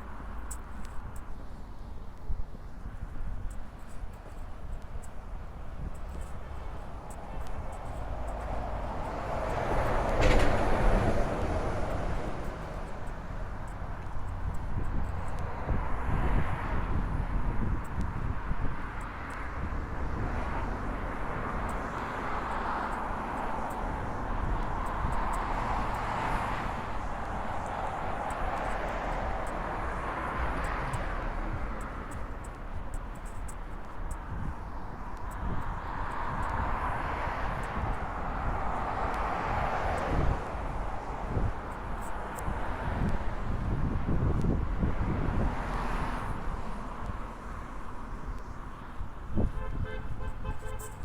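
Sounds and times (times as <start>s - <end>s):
wet road traffic noise: 0.0s - 51.0s
faint ticks: 0.3s - 10.6s, 11.4s - 15.5s, 27.4s - 34.5s.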